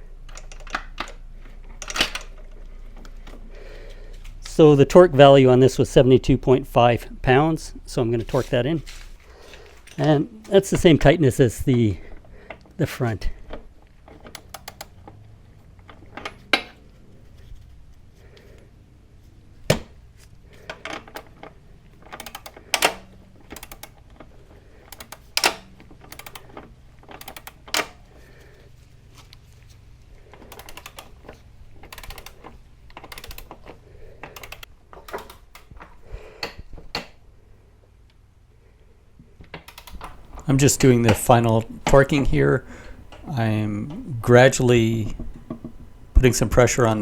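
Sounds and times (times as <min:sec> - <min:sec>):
torque wrench ratchet clicks: 0:24.9 - 0:26.6, 0:30.4 - 0:31.2, 0:31.9 - 0:32.4, 0:33.0 - 0:33.6, 0:34.2 - 0:35.7
torque wrench sharp clicks: 0:24.9 - 0:28.0, 0:30.4 - 0:31.2, 0:31.9 - 0:33.6, 0:34.2 - 0:35.8, 0:39.7 - 0:43.3.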